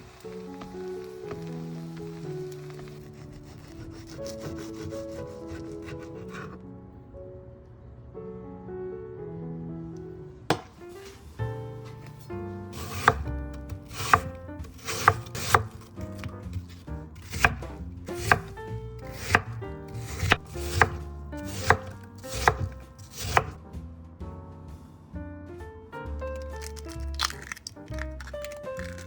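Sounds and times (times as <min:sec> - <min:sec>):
knife chopping on cutting board: 0:02.7 - 0:06.6, 0:10.5 - 0:11.2, 0:11.8 - 0:23.6.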